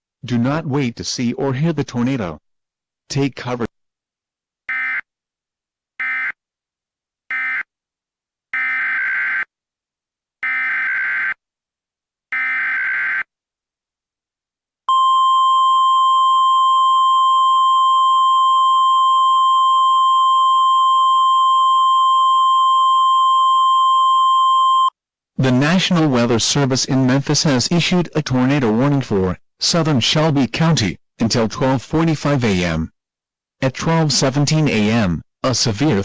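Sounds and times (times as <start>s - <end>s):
steady warning alarm tone: 14.9s - 24.9s.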